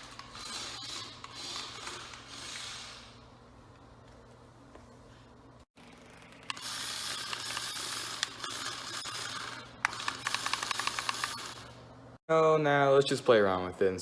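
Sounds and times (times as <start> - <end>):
toy car motor whirring: 0.0 - 3.2, 6.0 - 11.7.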